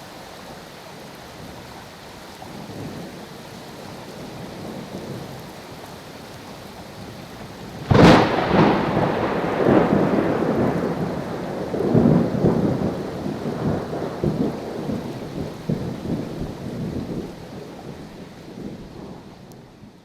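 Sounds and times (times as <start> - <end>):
steady rain: 0.0 - 20.0
thunderclap and rumbling thunder: 7.0 - 20.0.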